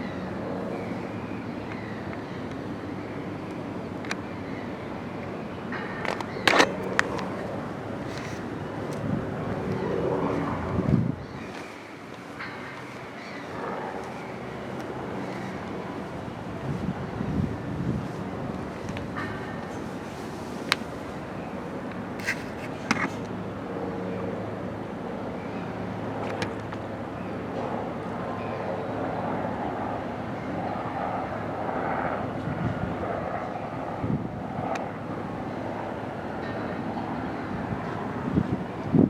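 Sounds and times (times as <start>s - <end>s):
sharp clicks and knocks: 5.7s - 7.3s.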